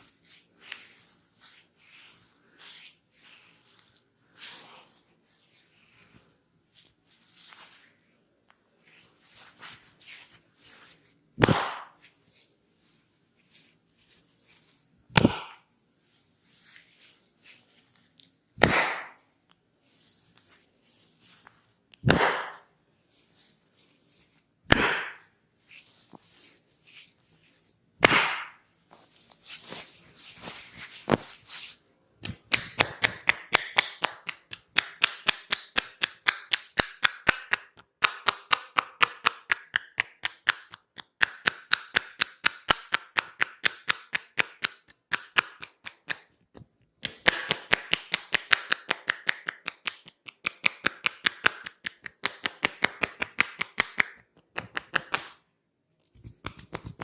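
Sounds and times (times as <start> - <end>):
rubbing of hair and scalp: 0.0 - 8.2, 8.8 - 11.2, 12.0 - 14.9, 16.0 - 18.4, 19.8 - 21.8, 23.0 - 24.5, 25.6 - 27.8, 28.6 - 31.8
hand slaps on head: 11.4 - 12.0, 15.1 - 15.6, 18.6 - 19.2, 22.0 - 22.7, 24.7 - 25.2, 28.0 - 28.6.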